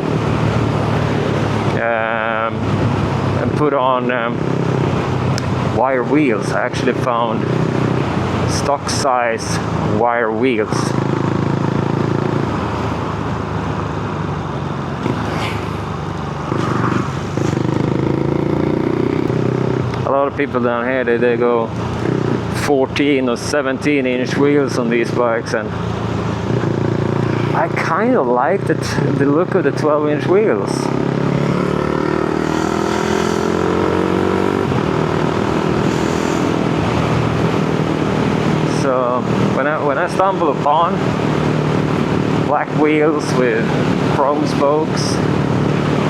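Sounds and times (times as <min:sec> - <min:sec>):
motorcycle engine running: 0:00.0 - 0:20.2, 0:21.7 - 0:23.2, 0:24.4 - 0:46.0
wind and road noise: 0:00.0 - 0:46.0.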